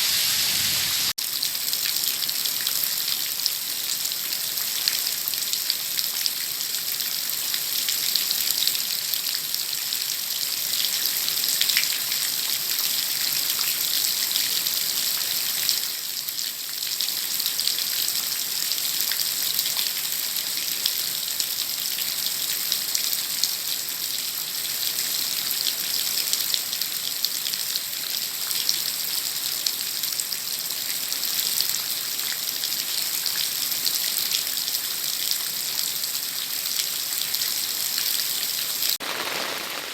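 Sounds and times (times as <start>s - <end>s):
heavy rain falling: 38.8s - 39.9s.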